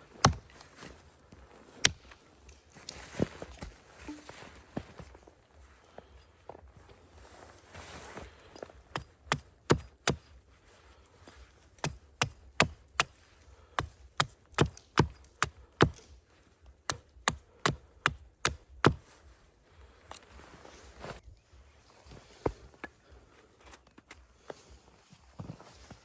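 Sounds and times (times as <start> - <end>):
wood being chopped: 0.2 - 0.6, 1.8 - 2.2, 8.9 - 10.3, 11.8 - 16.1, 16.8 - 19.0.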